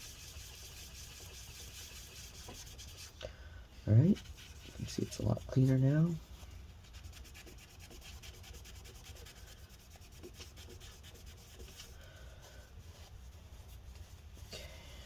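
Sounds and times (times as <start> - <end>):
paper rubbing on metal: 0.0 - 3.1, 3.9 - 6.2, 6.8 - 12.0.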